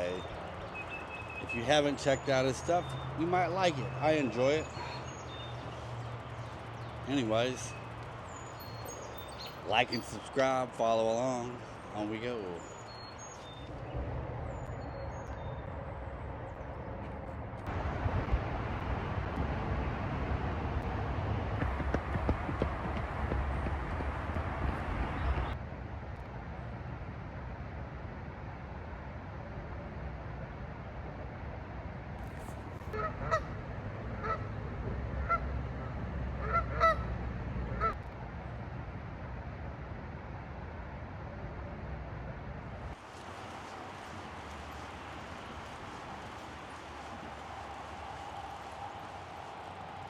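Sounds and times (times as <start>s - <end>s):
bicycle tyre noise on pavement: 0.0s - 27.5s, 32.1s - 40.0s, 42.4s - 50.0s
geese honking: 32.9s - 33.5s, 35.2s - 35.5s, 36.4s - 37.1s
wind buffeting microphone: 42.3s - 50.0s.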